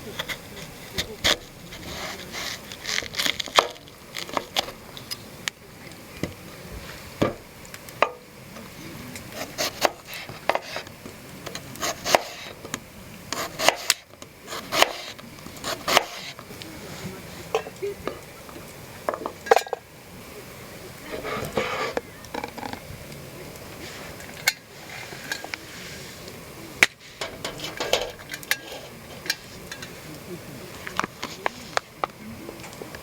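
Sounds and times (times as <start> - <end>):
light scraping: 0.0 - 7.4, 8.0 - 19.8, 20.9 - 33.0
knife chopping on wood: 9.6 - 10.8, 11.8 - 12.4, 13.4 - 16.3.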